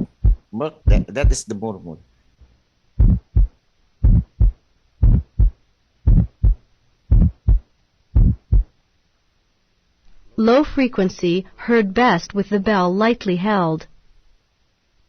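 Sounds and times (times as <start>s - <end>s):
heart beating: 0.0s - 1.4s, 3.0s - 8.7s
heart murmur: 0.0s - 1.4s, 3.0s - 7.6s, 8.2s - 8.7s.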